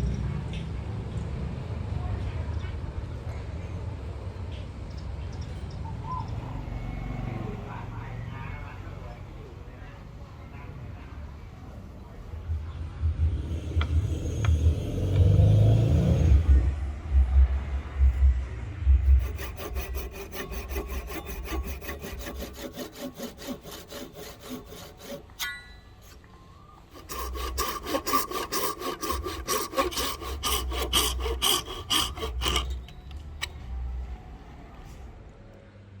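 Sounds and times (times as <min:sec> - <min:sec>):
hand saw strokes on wood: 0:19.0 - 0:26.2, 0:26.8 - 0:33.0
ringing squeal: 0:25.4 - 0:26.8.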